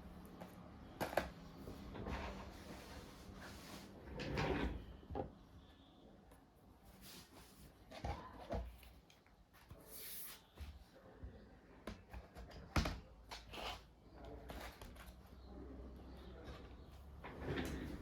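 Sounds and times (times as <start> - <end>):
objects scraping on surface: 16.4 - 18.0.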